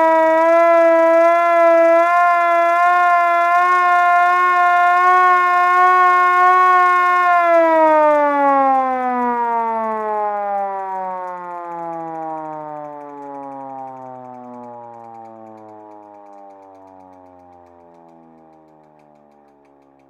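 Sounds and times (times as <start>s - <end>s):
manual siren wailing: 0.0s - 20.0s.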